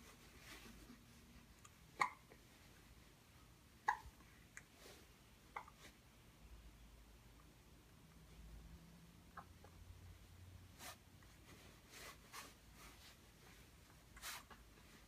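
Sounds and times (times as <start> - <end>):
baby hiccups: 3.9 - 4.1.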